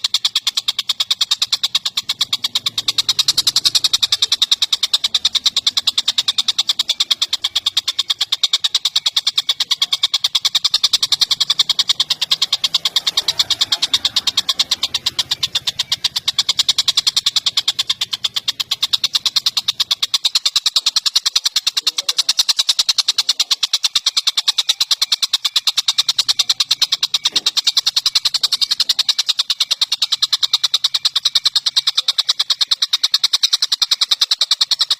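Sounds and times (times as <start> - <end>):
bird calling rapid high notes: 0.0 - 34.9.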